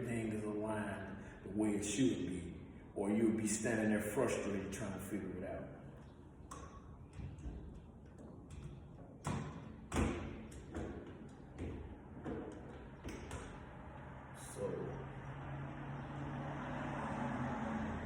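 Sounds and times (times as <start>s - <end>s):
metal door hardware knocking: 7.1s - 13.7s.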